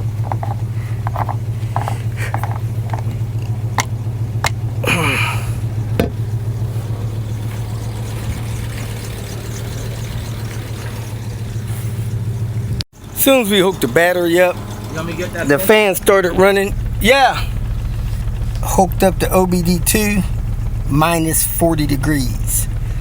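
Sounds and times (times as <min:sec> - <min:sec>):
car engine idling: 0:00.0 - 0:23.0
cooling fan running: 0:00.0 - 0:23.0.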